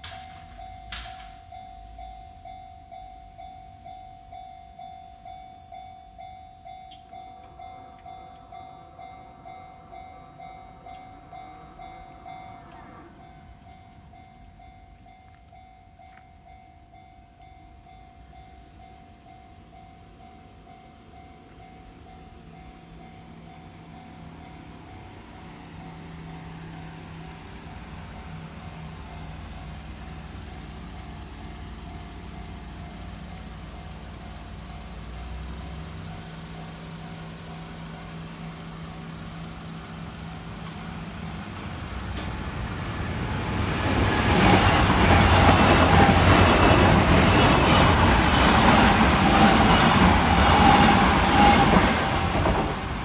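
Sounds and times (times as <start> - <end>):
level crossing bell clanging: 0.0 - 24.7
approaching train rumble: 0.0 - 53.0
level crossing warning bell: 0.0 - 53.0.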